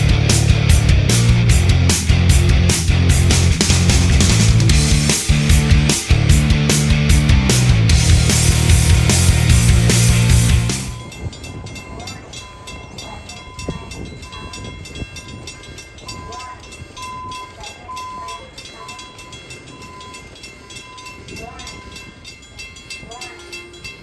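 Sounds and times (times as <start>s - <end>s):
music: 0.0s - 11.0s
train whine: 0.0s - 24.0s.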